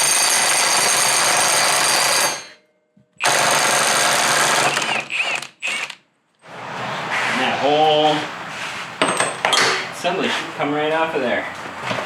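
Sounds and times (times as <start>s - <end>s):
impact wrench hammering: 9.0s - 10.0s.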